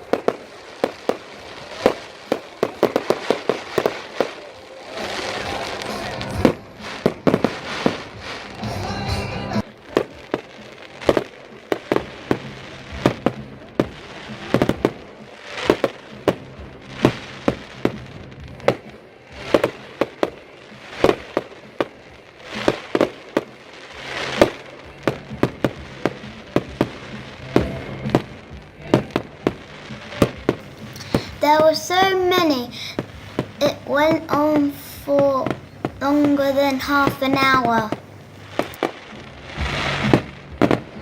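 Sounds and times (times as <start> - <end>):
fireworks exploding: 0.0 - 41.0.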